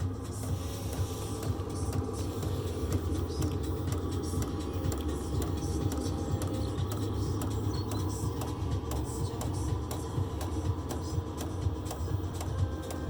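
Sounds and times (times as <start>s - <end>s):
heater burner rumbling: 0.0s - 13.0s.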